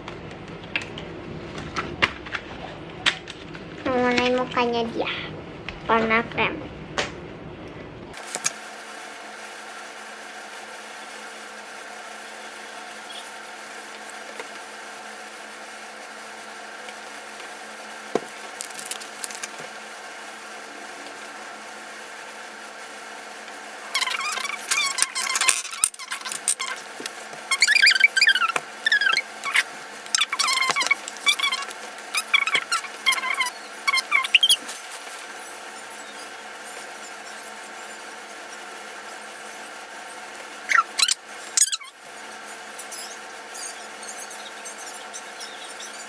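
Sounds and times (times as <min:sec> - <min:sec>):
low background hum: 0:00.0 - 0:08.4, 0:16.5 - 0:46.0
pen squeaking against paper: 0:24.0 - 0:38.4, 0:40.7 - 0:46.0.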